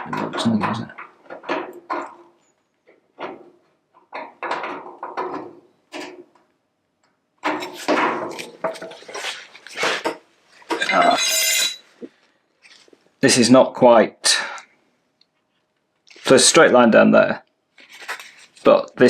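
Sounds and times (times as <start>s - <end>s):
sheet metal and tools clattering: 0.0s - 6.4s, 7.4s - 12.0s, 17.8s - 18.7s
metal-on-metal scrape: 7.5s - 12.0s.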